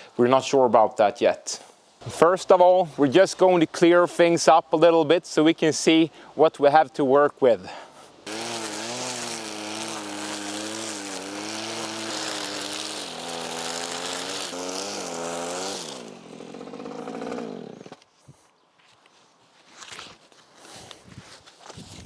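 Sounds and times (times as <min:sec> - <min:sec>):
small petrol engine revving: 0:08.3 - 0:18.0.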